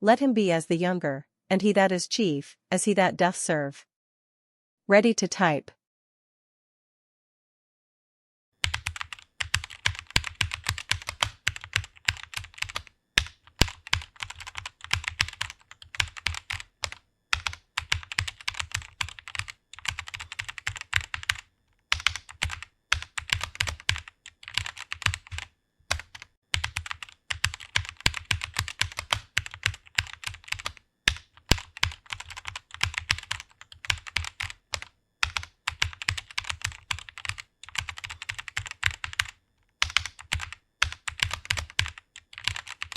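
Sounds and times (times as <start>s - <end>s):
fast typing on keyboard: 8.6s - 42.9s.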